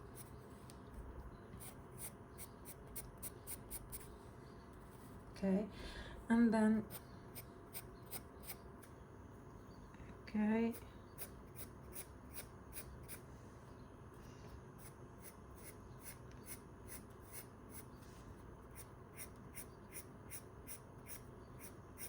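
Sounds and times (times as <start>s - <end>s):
pencil scratching on paper: 0.0s - 0.6s, 1.5s - 4.2s, 6.9s - 8.6s, 14.8s - 18.0s, 18.6s - 22.0s.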